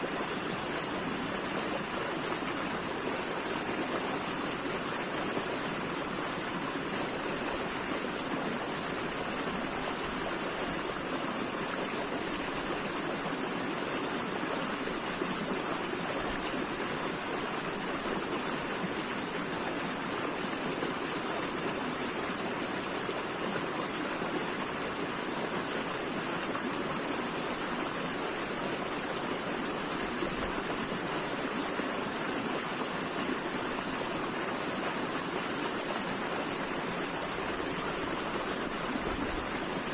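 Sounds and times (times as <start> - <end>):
running water flowing: 0.0 - 39.9.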